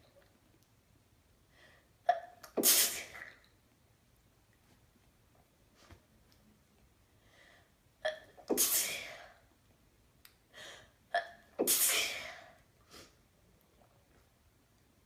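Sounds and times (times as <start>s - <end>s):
woman sneezing: 11.6s - 12.4s.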